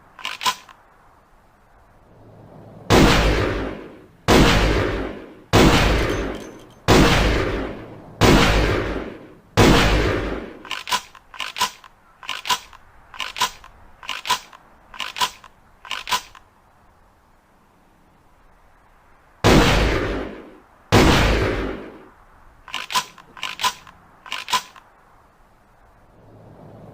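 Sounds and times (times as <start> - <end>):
metallic clicks of gun action: 0.1 - 0.8, 6.0 - 6.9, 10.6 - 16.5, 22.7 - 24.9
shotgun shots with echo: 2.9 - 11.0.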